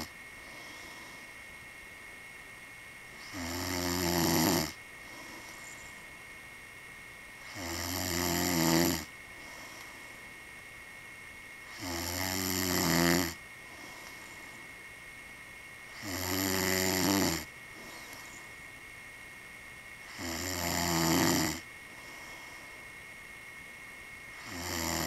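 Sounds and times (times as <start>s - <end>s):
man snoring: 0.0s - 1.2s, 3.2s - 5.6s, 7.4s - 9.9s, 11.7s - 14.2s, 15.9s - 18.2s, 20.1s - 22.6s, 24.4s - 25.0s.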